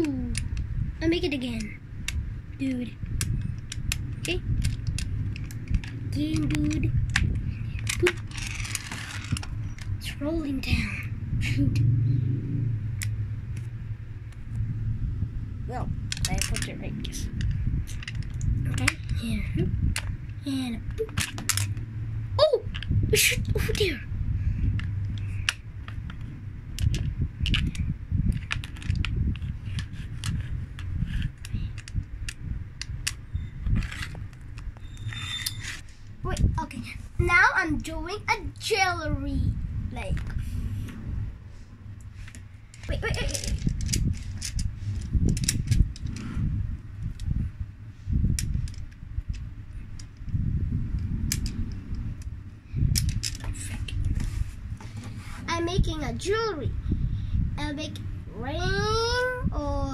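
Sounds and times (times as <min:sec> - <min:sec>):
magnetic balls clicking together: 0:00.0 - 0:10.7, 0:16.0 - 0:21.9, 0:24.7 - 0:36.6, 0:42.0 - 0:46.3, 0:48.2 - 0:54.2
low handling rumble: 0:00.0 - 0:59.9.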